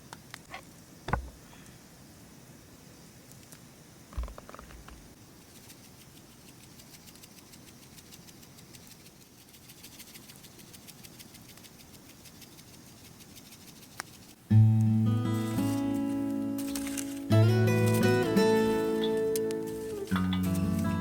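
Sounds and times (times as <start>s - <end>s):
wood fire crackling: 13.9s - 21.0s.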